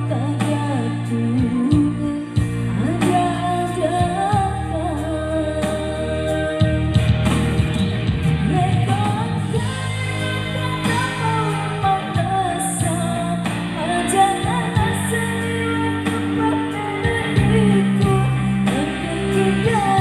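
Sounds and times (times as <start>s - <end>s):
guitar and band accompaniment: 0.0s - 20.0s
person singing: 8.4s - 20.0s.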